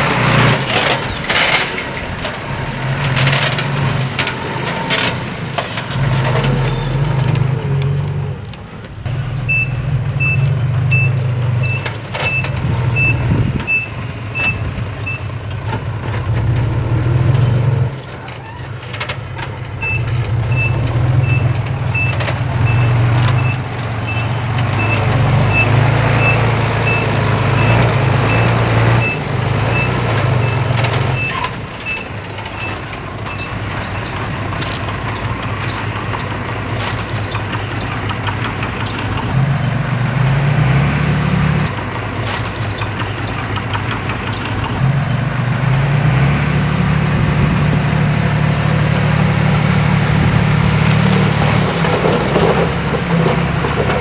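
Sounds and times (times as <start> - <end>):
diesel truck engine running: 0.0 - 54.0
reversing alarm beeping: 9.4 - 15.3, 19.8 - 34.1.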